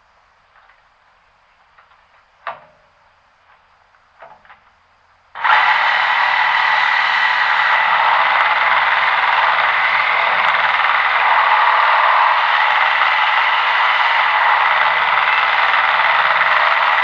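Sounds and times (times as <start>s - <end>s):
loud steady machine whirring: 5.4s - 17.0s.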